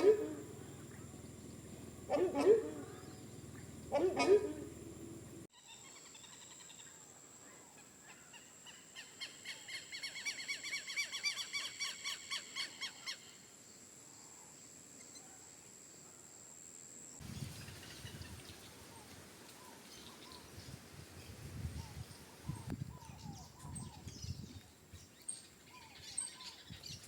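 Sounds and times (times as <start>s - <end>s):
bird calling: 0.0s - 5.5s.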